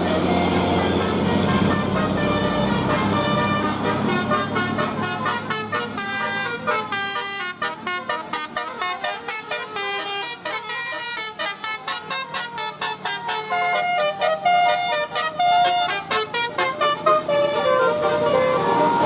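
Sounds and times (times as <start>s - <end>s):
low engine rumble: 0.0s - 19.0s
multi-tone bus horn playing a tune: 0.0s - 19.0s.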